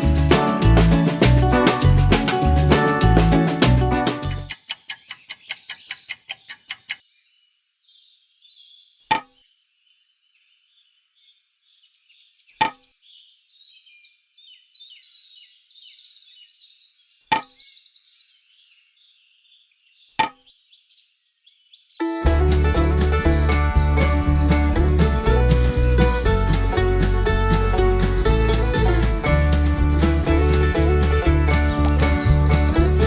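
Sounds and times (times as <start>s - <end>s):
faint birds chirping: 3.5s - 33.0s
quick ticks: 4.2s - 7.0s
sharp knocks: 9.1s - 9.4s, 12.6s - 12.8s, 20.2s - 20.5s.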